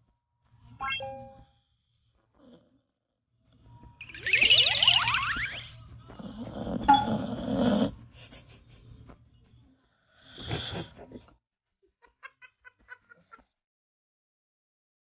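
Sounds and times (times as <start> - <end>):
dog snoring: 6.1 - 8.1, 10.1 - 11.2.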